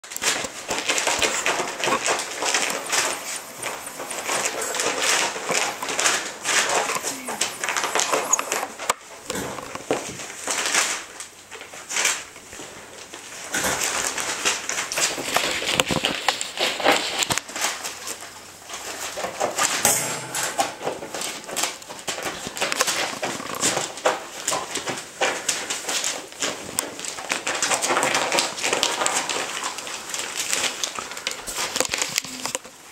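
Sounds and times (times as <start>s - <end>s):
scuffling and scratching: 0.0s - 32.9s
puppies squeaking and yipping: 1.2s - 8.8s.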